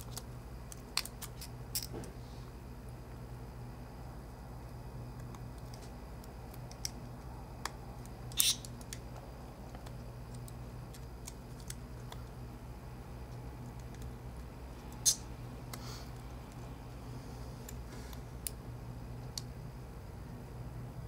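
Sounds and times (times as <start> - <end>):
low steady hum: 0.0 - 21.0.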